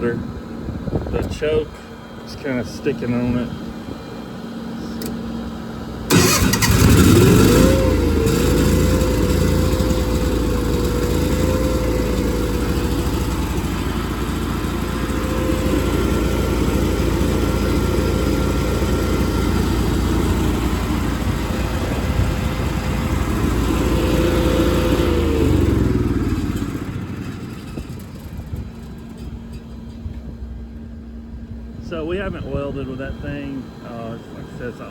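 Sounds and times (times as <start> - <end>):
welder engine starting and running: 4.8 - 30.9.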